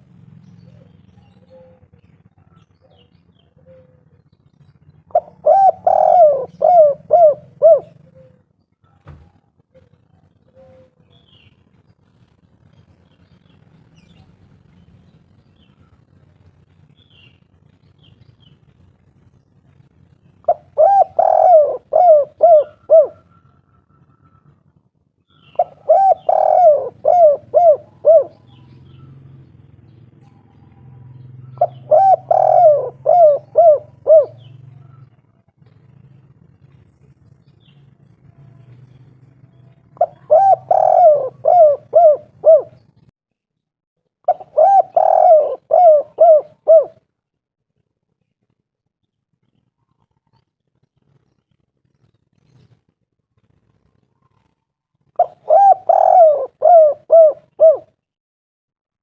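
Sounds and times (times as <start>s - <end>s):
dove cooing: 0.0s - 4.2s, 5.0s - 11.4s, 20.4s - 24.6s, 25.3s - 29.4s, 30.2s - 37.8s, 38.4s - 43.0s, 44.2s - 47.1s, 54.1s - 58.0s
faint low hum: 0.0s - 43.0s.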